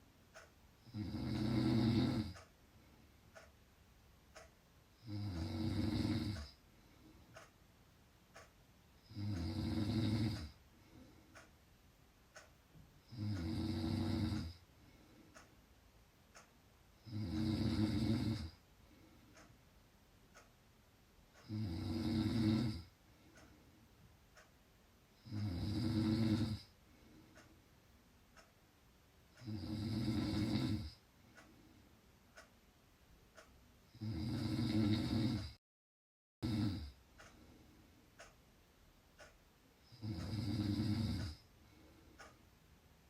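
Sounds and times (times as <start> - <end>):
loud snoring: 0.8 - 2.5, 5.0 - 6.6, 9.0 - 10.6, 13.1 - 14.6, 17.0 - 18.6, 21.4 - 22.9, 25.2 - 26.7, 29.4 - 31.0, 33.9 - 35.6, 36.4 - 37.0, 39.9 - 41.4.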